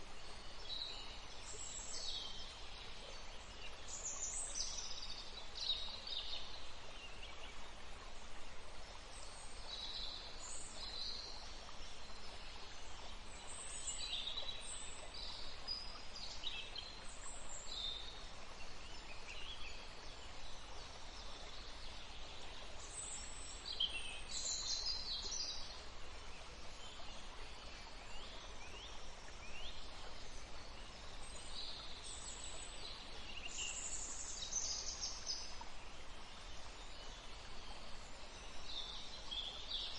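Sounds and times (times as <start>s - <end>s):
steady background hiss: 0.0s - 39.9s.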